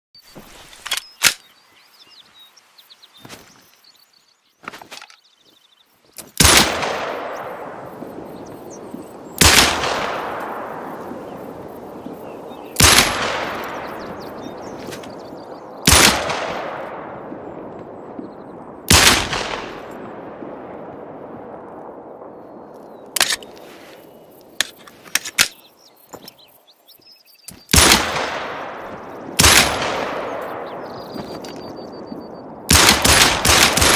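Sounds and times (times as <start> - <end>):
pistol shots echoing: 6.4 - 8.0, 9.4 - 11.0, 12.6 - 14.5, 15.8 - 17.3, 18.9 - 20.3, 27.7 - 32.0, 32.6 - 33.9.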